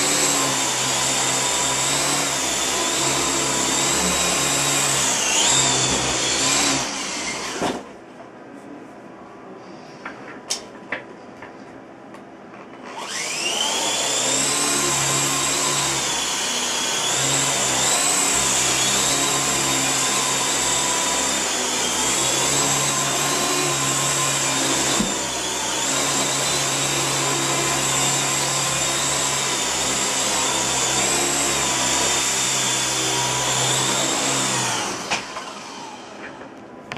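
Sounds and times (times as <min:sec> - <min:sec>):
electric motors whirring: 0:12.8 - 0:36.4.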